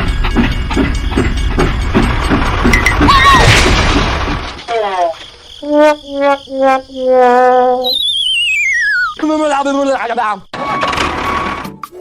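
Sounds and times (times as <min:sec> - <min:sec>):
buzzy horn-like tone: 0:05.6 - 0:07.8
warbling whistle gliding down: 0:07.8 - 0:09.2.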